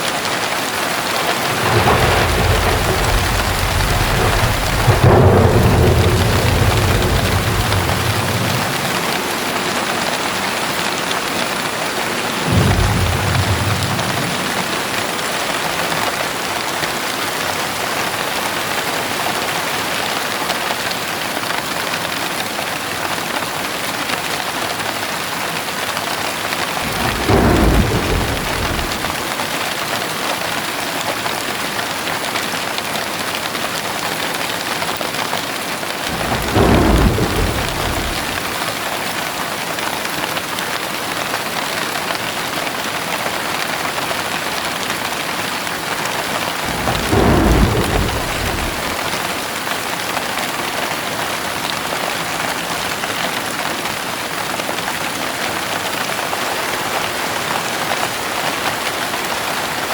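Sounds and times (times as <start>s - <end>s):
heavy rain falling: 0.0s - 59.9s
rolls of thunder: 1.3s - 16.4s, 26.7s - 29.6s, 36.0s - 39.3s, 46.5s - 49.6s.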